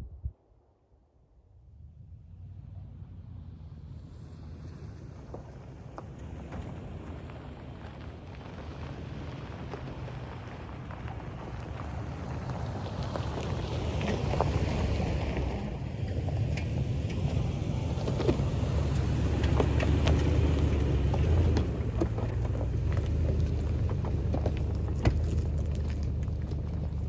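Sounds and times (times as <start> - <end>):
vehicle driving low rumble: 1.4 - 27.0.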